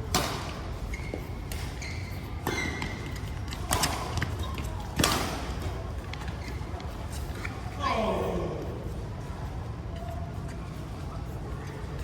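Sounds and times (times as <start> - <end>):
shoes squeaking on court floor: 0.7 - 4.8, 6.2 - 7.7.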